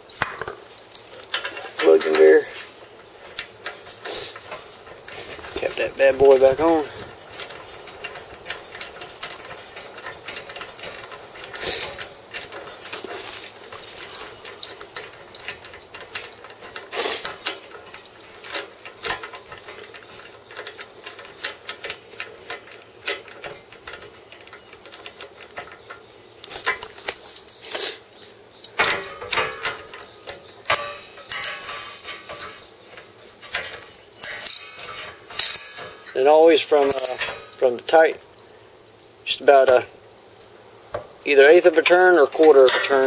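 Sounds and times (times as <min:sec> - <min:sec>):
wrench and socket clinking: 0:00.0 - 0:38.4
metal knocks: 0:28.7 - 0:32.7.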